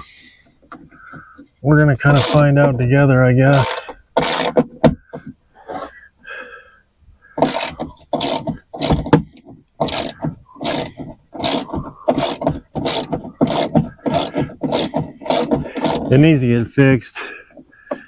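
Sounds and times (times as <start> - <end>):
ratchet wrench clicking: 3.6 - 4.6, 7.4 - 9.1, 9.8 - 16.1.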